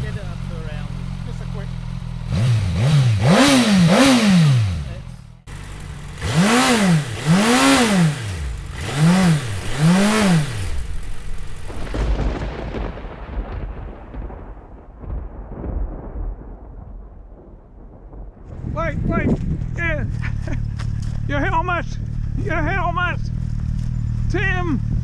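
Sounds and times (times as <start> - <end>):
low muffled engine rumble: 0.0 - 2.3, 17.9 - 25.0
motorcycle engine revving: 0.0 - 14.4, 18.4 - 25.0.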